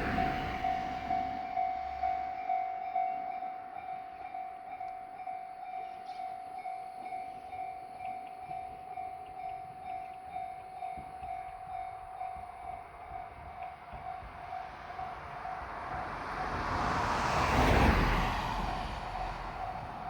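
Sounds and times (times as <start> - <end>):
level crossing alarm pulsing tone: 0.0 - 2.5.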